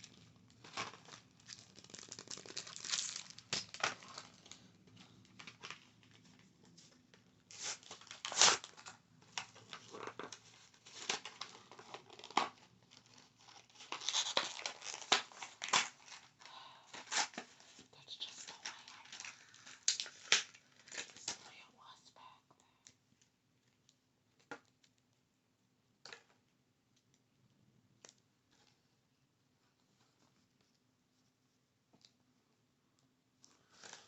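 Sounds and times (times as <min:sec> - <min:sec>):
material crinkling and crackling: 0:00.0 - 0:21.5, 0:26.0 - 0:34.0.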